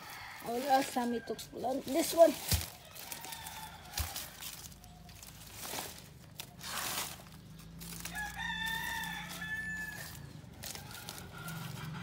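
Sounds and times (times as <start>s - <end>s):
rooster crowing: 0.0s - 1.7s, 2.8s - 4.7s, 8.0s - 12.0s.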